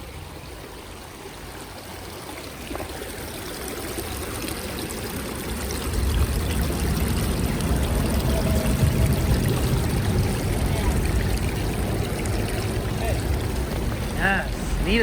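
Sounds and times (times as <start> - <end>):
creek water rushing: 0.0 - 15.0
deep water rumble: 4.2 - 15.0.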